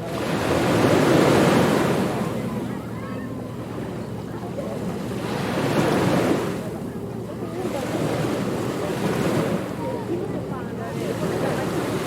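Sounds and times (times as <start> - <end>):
ocean waves breaking on a beach: 0.0 - 12.0.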